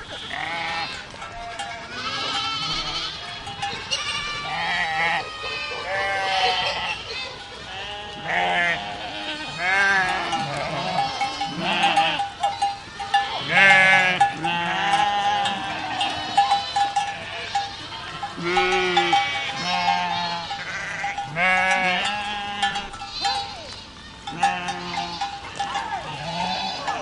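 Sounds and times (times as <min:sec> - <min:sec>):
goats bleating: 0:00.0 - 0:27.0
bell clanking: 0:01.0 - 0:04.4, 0:10.0 - 0:27.0.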